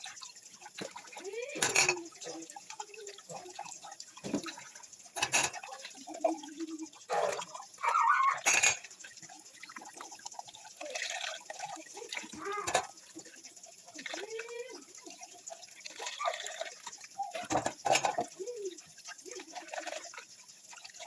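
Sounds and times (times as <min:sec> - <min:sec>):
water running and dripping: 0:00.0 - 0:21.0
dishes and utensils clattering: 0:00.8 - 0:02.4, 0:04.2 - 0:06.0, 0:08.4 - 0:09.0, 0:12.4 - 0:12.9, 0:17.3 - 0:18.3.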